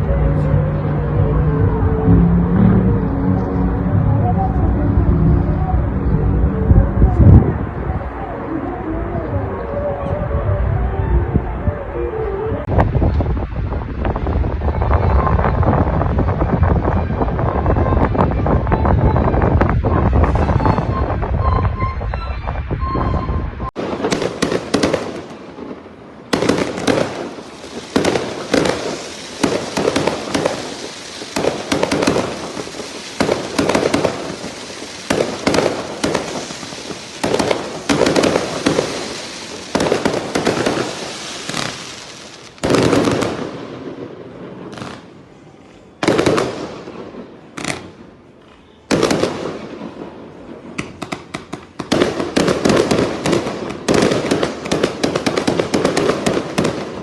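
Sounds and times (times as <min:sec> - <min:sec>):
fireworks bangs and crackling: 0:12.6 - 0:21.3, 0:23.7 - 0:57.0.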